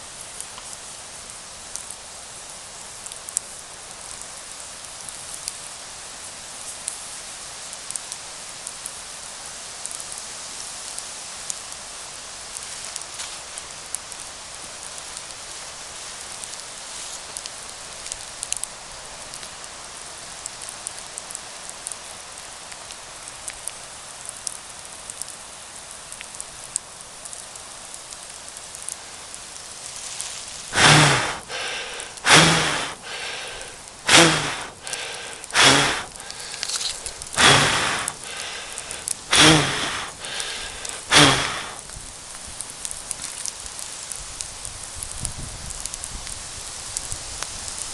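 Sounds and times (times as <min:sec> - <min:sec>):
campfire hissing and crackling: 0:00.0 - 0:47.9
loud rushing bursts: 0:30.7 - 0:41.8.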